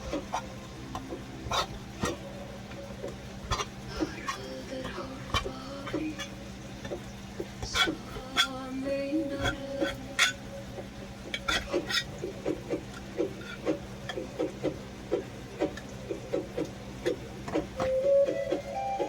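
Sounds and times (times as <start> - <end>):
spoon scraping in a pot: 0.0 - 2.2, 3.0 - 7.0, 7.6 - 10.5, 11.3 - 14.2.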